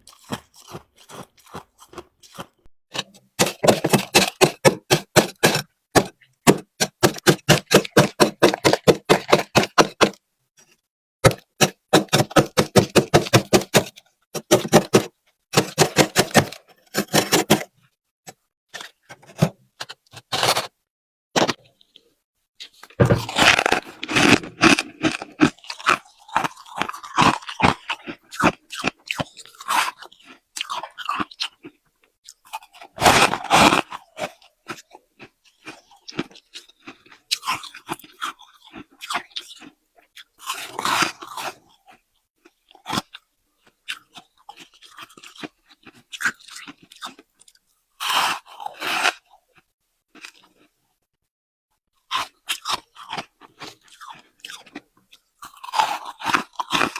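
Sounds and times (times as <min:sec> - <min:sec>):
chewing crunchy ice: 0:00.0 - 0:17.8, 0:22.6 - 0:50.8, 0:51.9 - 0:56.9.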